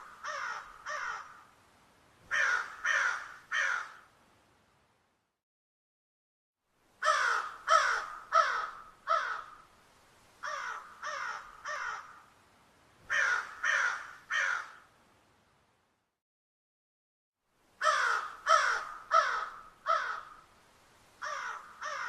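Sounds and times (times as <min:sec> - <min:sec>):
crow cawing: 0:00.0 - 0:01.5, 0:02.3 - 0:04.1, 0:07.0 - 0:09.7, 0:10.4 - 0:12.3, 0:13.1 - 0:14.9, 0:17.8 - 0:20.5, 0:21.2 - 0:22.0.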